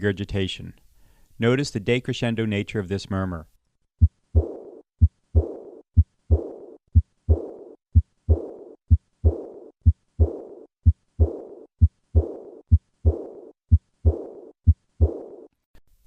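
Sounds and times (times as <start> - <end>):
blowing heart murmur: 4.0 - 15.5
heartbeat sounds: 4.0 - 15.5.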